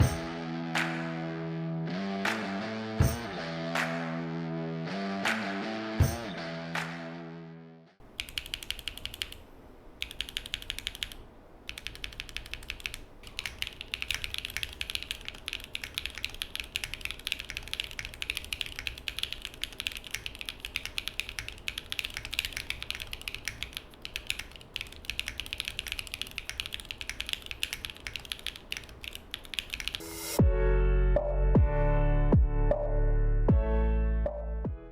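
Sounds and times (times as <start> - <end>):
mechanical keyboard typing: 8.0 - 30.0.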